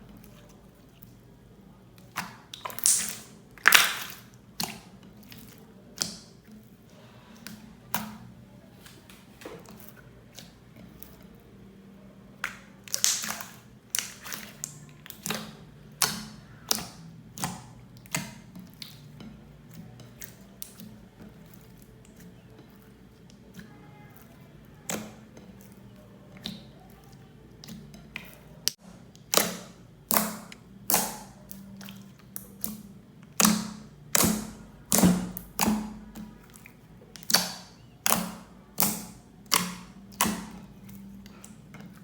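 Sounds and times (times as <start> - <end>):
slime clicking and popping: 2.1 - 4.8, 12.4 - 19.0, 28.6 - 31.6, 33.4 - 36.3, 37.1 - 40.6.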